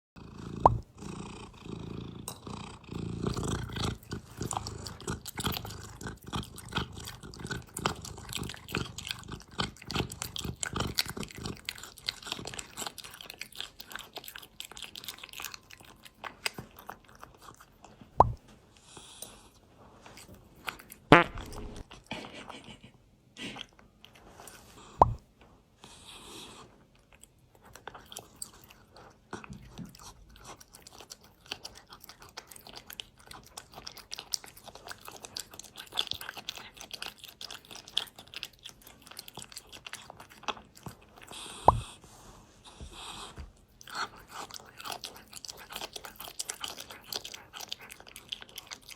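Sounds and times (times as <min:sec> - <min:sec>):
cat crunching food: 0:00.4 - 0:18.2, 0:20.0 - 0:22.1, 0:27.0 - 0:41.8, 0:42.7 - 0:48.9.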